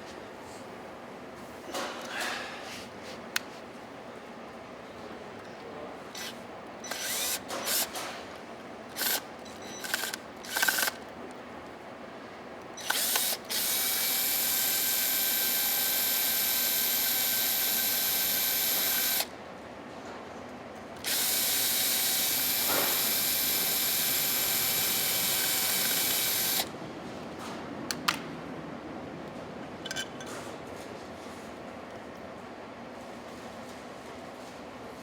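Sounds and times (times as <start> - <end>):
cordless drill running: 6.2 - 8.0, 8.9 - 11.0, 12.8 - 19.3, 21.0 - 26.7.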